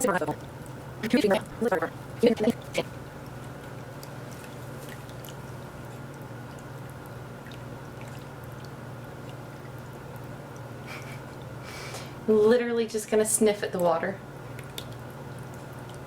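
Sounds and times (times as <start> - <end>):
water trickling: 0.0 - 11.6, 13.8 - 16.0
low pump hum: 0.0 - 16.0
faint water drips: 1.5 - 11.6, 13.6 - 16.0.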